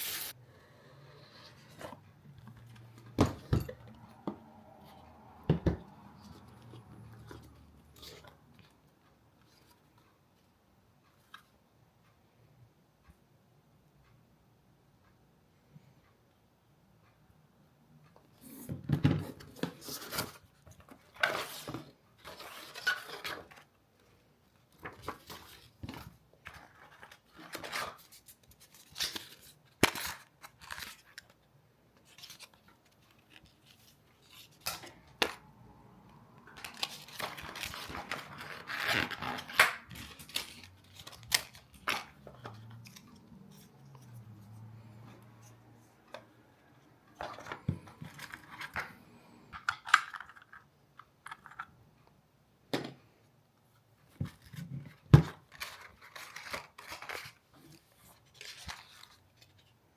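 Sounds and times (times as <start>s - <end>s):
clicks and scrapes of small parts: 36.5s - 51.8s.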